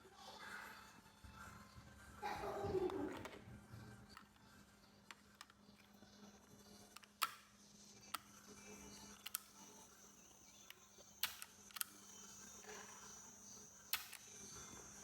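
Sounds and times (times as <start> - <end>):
plastic clicks and taps: 5.0 - 5.9, 6.9 - 8.3, 9.2 - 9.5, 10.6 - 11.9, 13.9 - 14.3.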